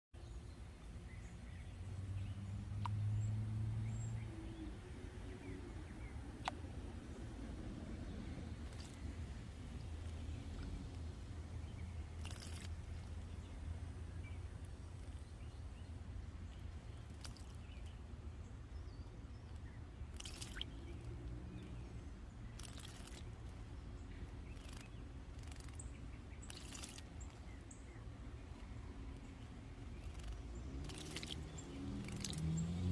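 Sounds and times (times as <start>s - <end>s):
low steady rumble: 0.2s - 32.9s
bird splashing in water: 8.4s - 13.6s, 16.5s - 18.0s, 19.6s - 27.7s, 28.3s - 32.9s.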